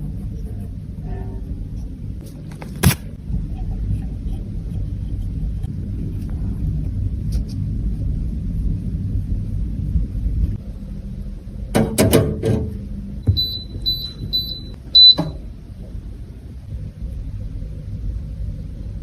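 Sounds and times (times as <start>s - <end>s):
low rumble: 3.2s - 11.7s, 12.7s - 19.0s
short high-pitched beeps: 13.3s - 15.3s.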